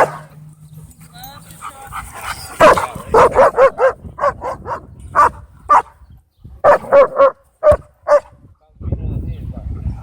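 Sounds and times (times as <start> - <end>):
dog barking: 2.6 - 5.9, 6.6 - 8.3.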